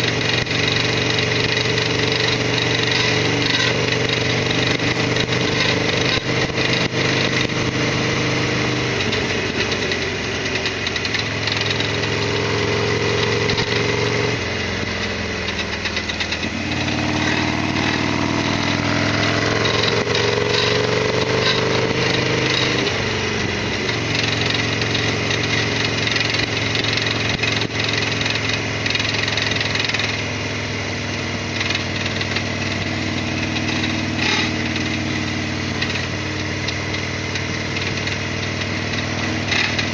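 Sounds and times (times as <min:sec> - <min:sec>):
motorcycle engine revving: 0:00.0 - 0:39.9.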